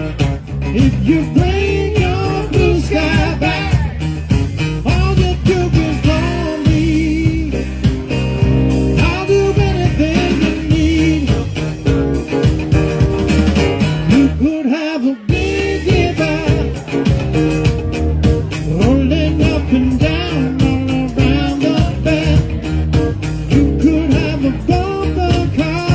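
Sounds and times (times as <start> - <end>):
steady drum beat: 0.0 - 14.5, 15.3 - 25.9
bass guitar: 0.0 - 25.9
electric guitar: 0.0 - 25.9
person singing: 0.6 - 4.1, 4.7 - 8.0, 8.9 - 11.7, 13.8 - 17.6, 18.5 - 25.9.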